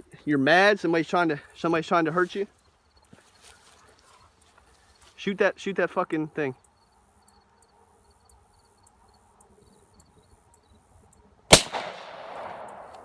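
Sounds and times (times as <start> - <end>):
pistol shot with echo: 11.5 - 13.0.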